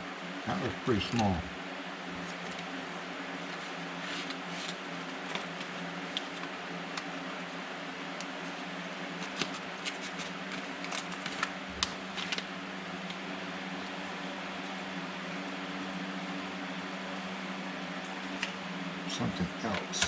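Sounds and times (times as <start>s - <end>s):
steady low hum: 0.0s - 9.2s, 11.5s - 20.0s.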